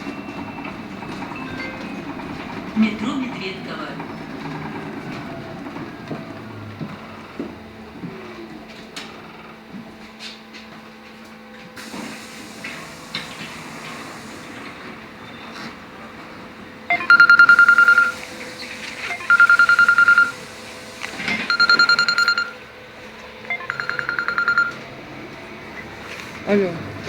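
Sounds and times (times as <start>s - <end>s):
bus low steady hum: 0.0s - 27.0s
rapid high warning beeps: 16.9s - 22.7s, 23.4s - 24.8s.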